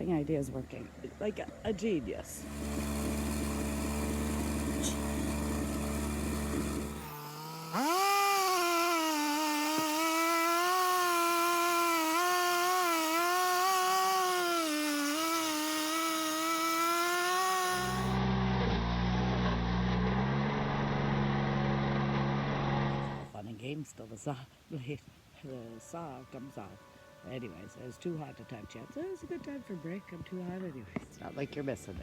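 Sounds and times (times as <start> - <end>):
chainsaw cutting firewood: 2.3 - 23.3.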